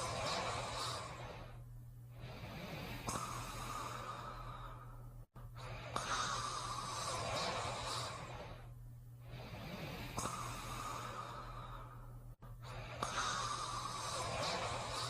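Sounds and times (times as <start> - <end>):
cartoon snoring: 6.0 - 8.5, 13.0 - 15.0.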